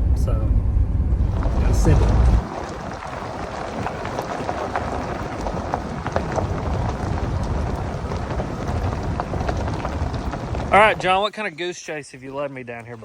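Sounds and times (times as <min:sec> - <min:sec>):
truck engine and tyres rumbling: 0:00.0 - 0:13.0
cab knocks and rattles: 0:01.2 - 0:11.2.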